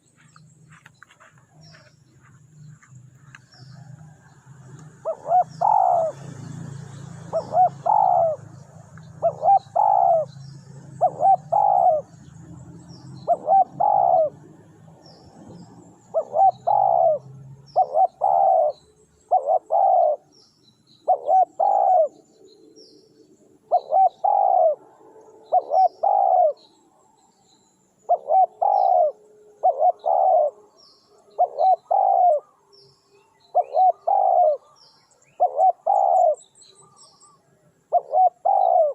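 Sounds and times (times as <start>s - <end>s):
small birds chirping faintly: 0.0s - 38.9s
doves cooing: 1.0s - 22.4s, 23.6s - 26.7s, 28.1s - 32.6s, 33.5s - 38.9s.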